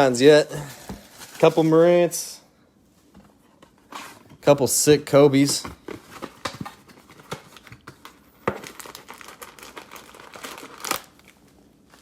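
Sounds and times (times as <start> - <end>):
cellophane pack crinkling: 6.1 - 12.0.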